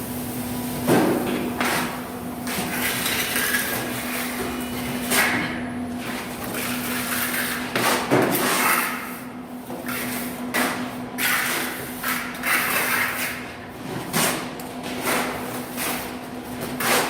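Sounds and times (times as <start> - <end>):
trowel scraping mortar: 9.8 - 13.5.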